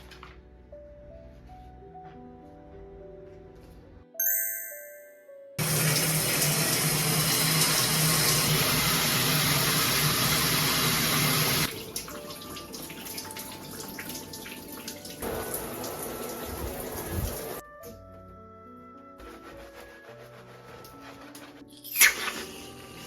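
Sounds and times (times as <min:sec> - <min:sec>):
water running from tap: 0:05.6 - 0:17.6.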